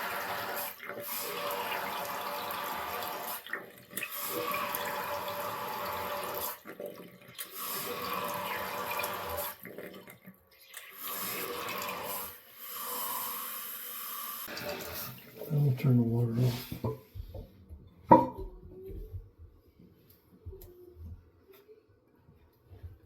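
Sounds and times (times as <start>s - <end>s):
toilet water rushing in surges: 0.0s - 16.0s.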